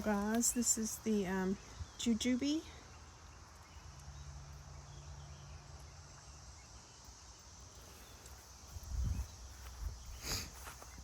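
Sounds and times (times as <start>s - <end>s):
insects chirring: 0.0s - 11.0s
footstep on ground: 8.3s - 11.0s.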